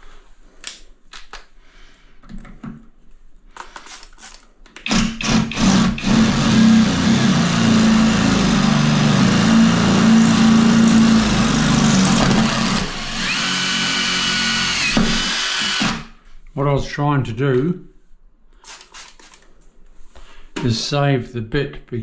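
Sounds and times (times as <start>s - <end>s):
power drill boring into tile: 4.9s - 16.1s
high whine of drill bit grinding: 5.2s - 16.1s.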